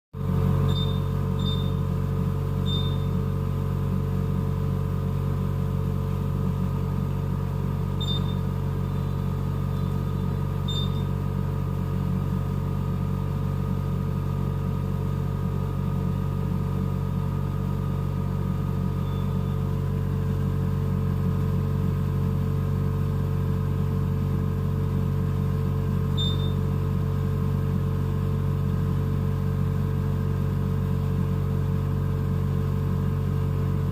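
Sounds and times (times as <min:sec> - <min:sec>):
ventilator mechanical hum: 0:00.2 - 0:33.9
short high electronic beeps: 0:00.6 - 0:01.8, 0:02.6 - 0:03.1, 0:08.0 - 0:09.1, 0:09.7 - 0:11.2, 0:19.0 - 0:19.6, 0:26.2 - 0:26.6.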